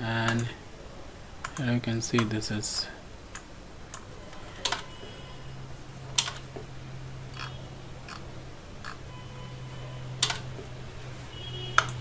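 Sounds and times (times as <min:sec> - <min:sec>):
keyboard and mouse clicking: 0:00.2 - 0:00.5, 0:01.4 - 0:02.4, 0:06.2 - 0:06.6, 0:10.2 - 0:10.5, 0:11.8 - 0:12.0.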